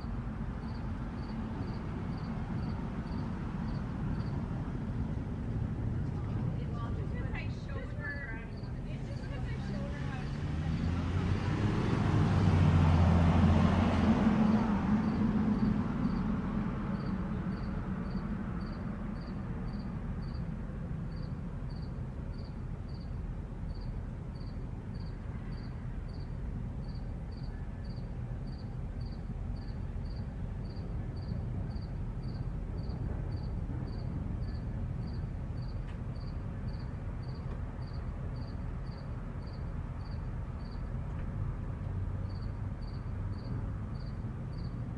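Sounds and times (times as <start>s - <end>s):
cricket chirping: 0.0s - 4.9s, 14.5s - 41.0s, 42.2s - 44.8s
car passing: 0.0s - 44.9s
distant traffic hum: 0.0s - 44.9s.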